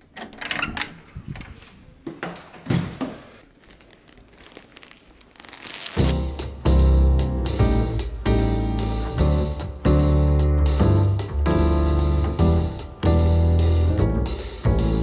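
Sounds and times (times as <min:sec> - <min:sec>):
packaging crinkling and tearing: 0:03.5 - 0:06.2
music: 0:06.0 - 0:15.0.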